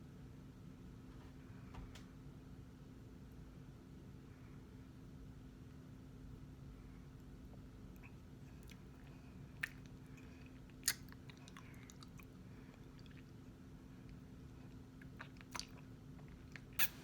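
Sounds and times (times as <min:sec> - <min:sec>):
faint steady hum: 0:00.0 - 0:17.0
crunchy chewing: 0:08.0 - 0:13.4, 0:14.0 - 0:17.0.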